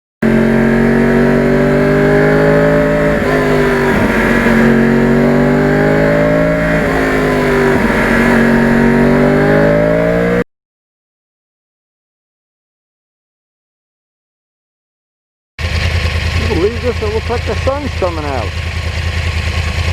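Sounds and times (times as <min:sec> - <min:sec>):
motorcycle engine running: 0:00.2 - 0:10.4, 0:15.6 - 0:19.9.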